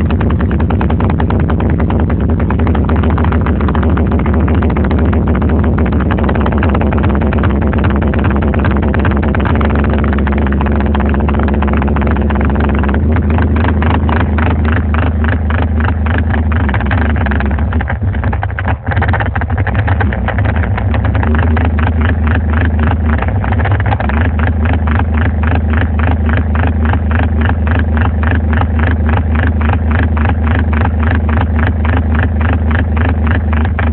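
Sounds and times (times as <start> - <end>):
loud bass-heavy electronic music: 0.0 - 17.8.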